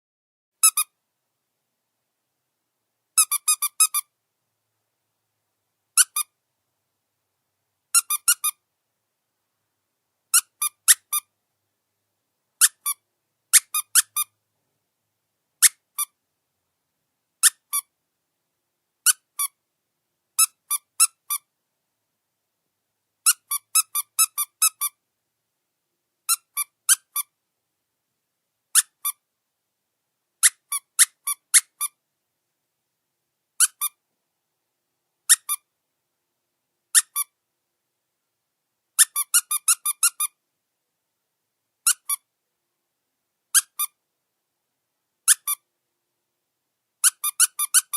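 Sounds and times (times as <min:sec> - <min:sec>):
rubber dog toy squeaking: 0:00.6 - 0:00.9, 0:03.2 - 0:04.1, 0:06.0 - 0:06.3, 0:07.9 - 0:08.6, 0:10.3 - 0:11.3, 0:12.6 - 0:14.3, 0:15.6 - 0:16.2, 0:17.4 - 0:17.9, 0:19.0 - 0:19.6, 0:20.4 - 0:21.5, 0:23.2 - 0:25.0, 0:26.3 - 0:27.3, 0:28.7 - 0:29.2, 0:30.4 - 0:32.0, 0:33.6 - 0:34.0, 0:35.3 - 0:35.7, 0:36.9 - 0:37.3, 0:39.0 - 0:40.4, 0:41.8 - 0:42.2, 0:43.5 - 0:44.0, 0:45.3 - 0:45.6, 0:47.0 - 0:47.9.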